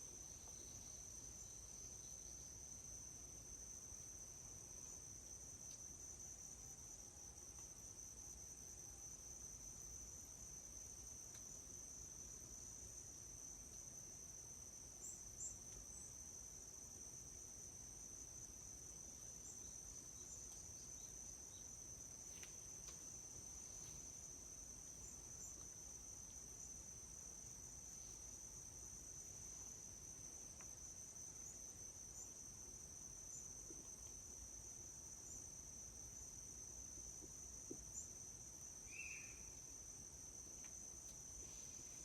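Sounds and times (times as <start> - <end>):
insect chorus trilling: 37.7 - 42.0.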